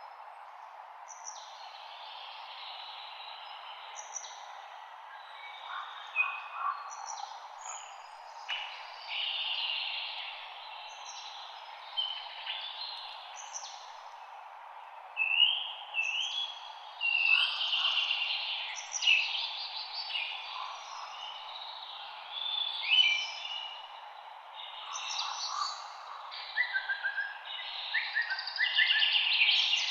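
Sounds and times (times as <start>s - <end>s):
wind through trees: 0.0s - 29.9s
songbirds whistling and trilling: 15.2s - 29.9s.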